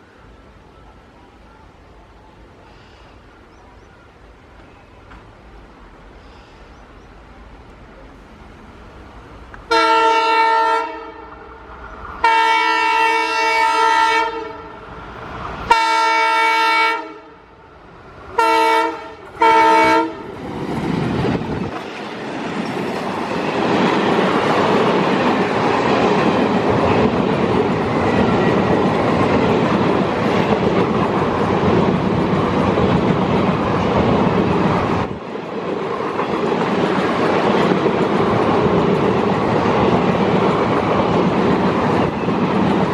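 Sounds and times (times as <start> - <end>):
train horn blasts: 9.7 - 11.5, 12.2 - 14.8, 15.7 - 17.6, 18.3 - 20.3
train wheels clattering on rails: 20.3 - 42.9.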